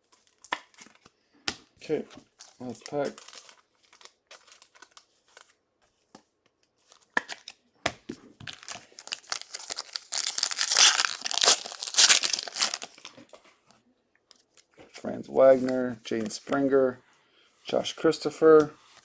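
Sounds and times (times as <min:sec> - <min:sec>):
card pack wrapper tearing and crinkling: 0:02.4 - 0:05.5, 0:08.4 - 0:13.3.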